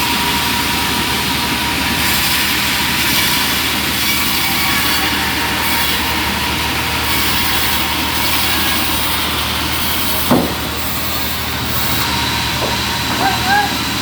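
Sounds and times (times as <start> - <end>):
bandsaw sawmill cutting log: 0.0 - 14.0
short thump: 10.3 - 10.7.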